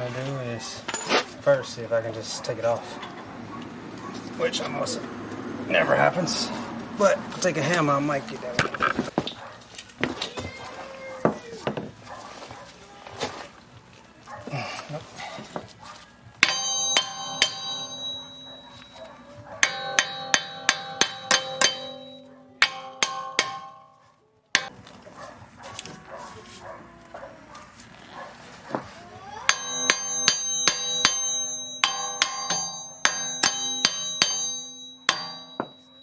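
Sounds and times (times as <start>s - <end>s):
hammer striking metal hub: 16.4s - 24.0s, 24.6s - 24.8s, 29.5s - 36.0s.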